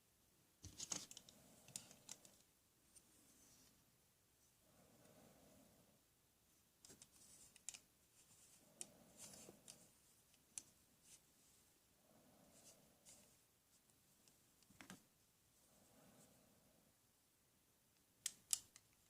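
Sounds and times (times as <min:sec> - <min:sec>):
faint clicks and light taps: 0:00.6 - 0:03.1, 0:06.8 - 0:10.8.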